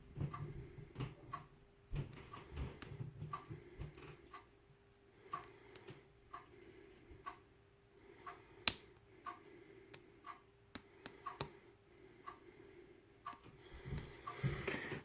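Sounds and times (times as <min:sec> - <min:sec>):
faint steady hum: 0:00.0 - 0:15.0
steady ticking: 0:02.2 - 0:04.5, 0:05.2 - 0:07.5, 0:08.1 - 0:11.5, 0:12.1 - 0:14.7.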